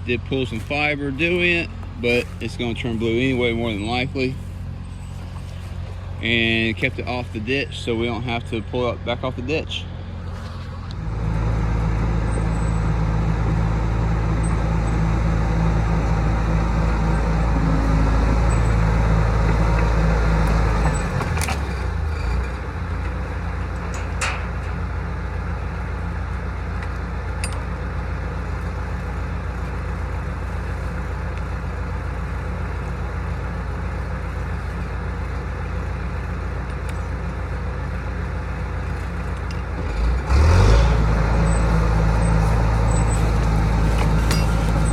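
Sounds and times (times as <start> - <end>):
bulldozer diesel engine: 0.0 - 44.9
light clanks: 20.5 - 24.9, 43.4 - 44.9.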